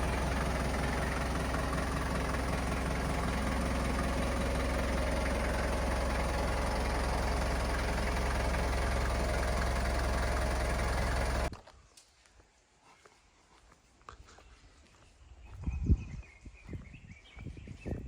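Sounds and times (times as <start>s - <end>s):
diesel engine idling: 0.0s - 11.5s.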